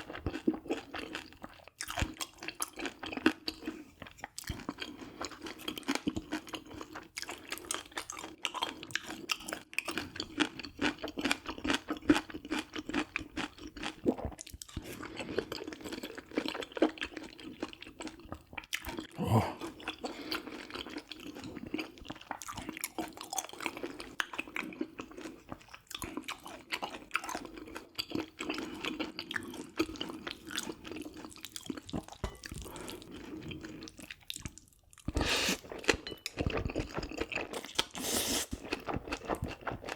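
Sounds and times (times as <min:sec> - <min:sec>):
close chewing crunches: 0:00.0 - 0:39.9
wet mouth sounds: 0:34.3 - 0:35.9, 0:36.5 - 0:39.7.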